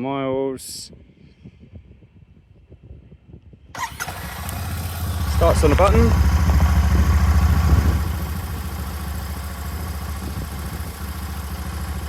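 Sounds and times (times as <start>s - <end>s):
motorcycle engine idling: 3.8s - 12.0s.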